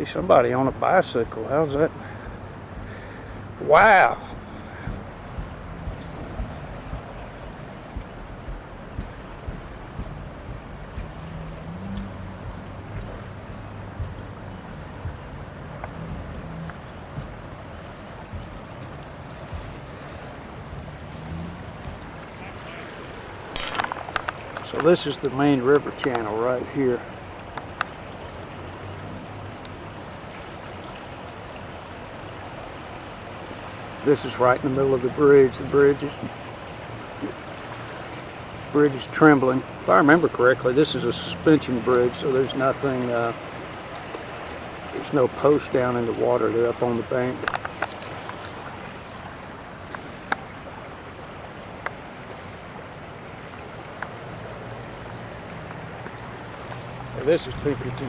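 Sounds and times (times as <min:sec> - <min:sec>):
river rushing: 0:00.0 - 0:58.0
sharp clicks: 0:23.2 - 0:26.3.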